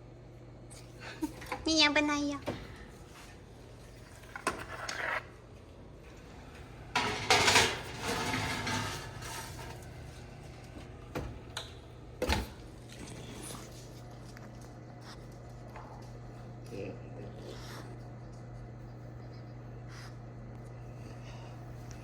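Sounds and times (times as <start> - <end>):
steady low hum: 0.0 - 22.0
dishes and utensils clattering: 6.9 - 10.1.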